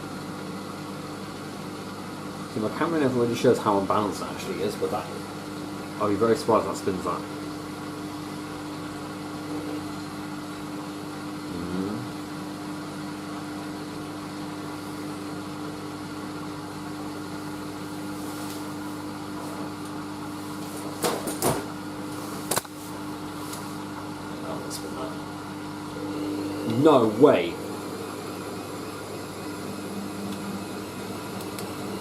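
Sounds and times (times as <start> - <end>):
washing machine drum humming: 12.8 - 32.0
washing machine loud knocks: 21.0 - 21.7.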